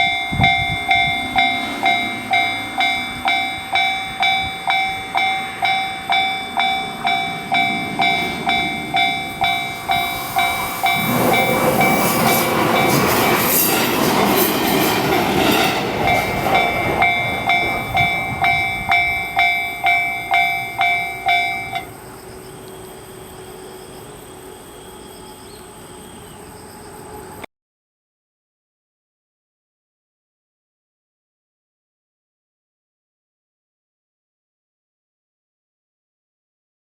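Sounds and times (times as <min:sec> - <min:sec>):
level-crossing electronic bell ringing: 0:00.0 - 0:22.0
train rumble and wheel clatter: 0:00.0 - 0:27.4.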